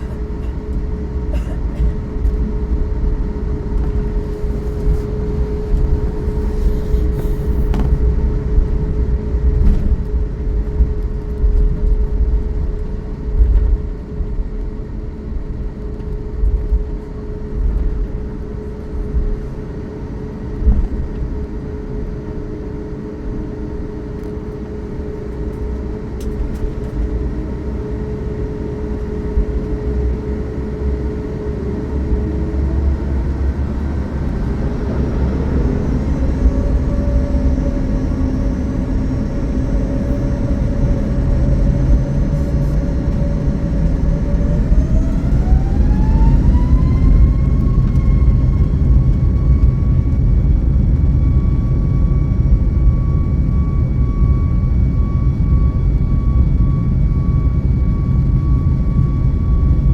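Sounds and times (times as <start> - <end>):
wheels rumbling while taxiing: 0.0 - 19.0
jet engine whine: 0.0 - 59.9.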